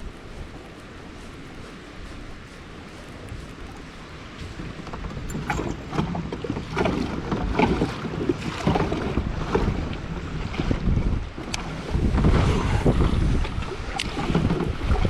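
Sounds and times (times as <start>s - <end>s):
waves slapping against kayak hull: 0.0s - 15.0s
wind buffeting microphone: 0.0s - 15.0s.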